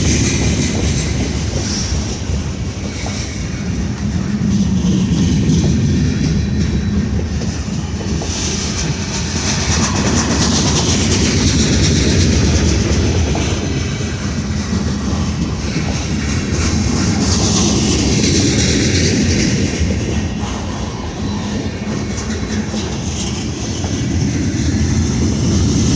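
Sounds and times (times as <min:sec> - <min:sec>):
hiss: 0:00.0 - 0:04.3
train wheels rumbling on rails: 0:00.0 - 0:25.9.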